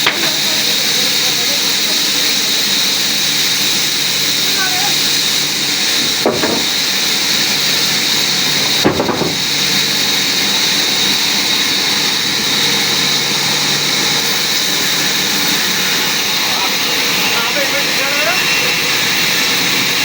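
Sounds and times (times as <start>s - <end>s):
power saw whining: 0.0s - 20.0s
short knocks: 6.2s - 7.0s, 8.7s - 9.8s.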